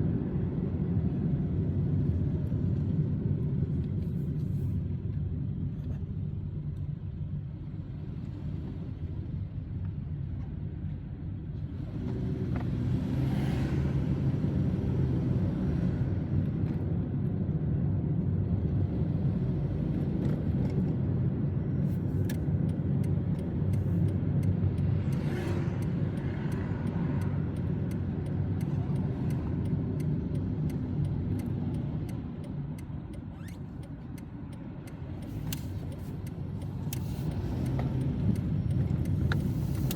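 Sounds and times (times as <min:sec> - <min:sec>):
car road and engine rumble: 0:00.0 - 0:39.9
faint regular ticking: 0:22.2 - 0:39.9.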